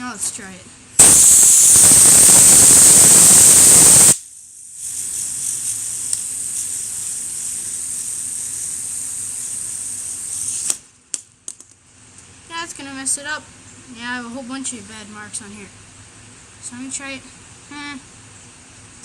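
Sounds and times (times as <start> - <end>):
air jet hissing: 1.0 - 4.2, 4.8 - 10.7.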